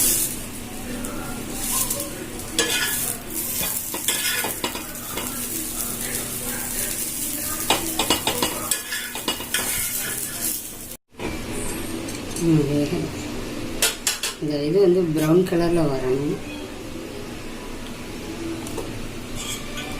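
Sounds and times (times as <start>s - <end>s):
bread sizzling in a pan: 0.0s - 11.0s
spatula scraping and tapping pan: 7.6s - 10.2s.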